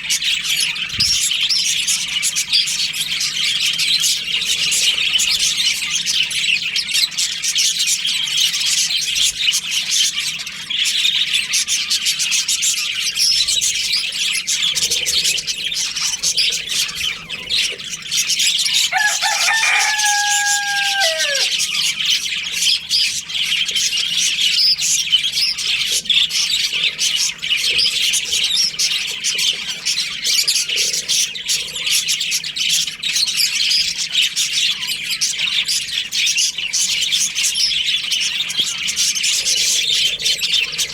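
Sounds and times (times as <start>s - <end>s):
budgerigars chirping: 0.0s - 40.9s
rooster crowing: 18.6s - 21.8s.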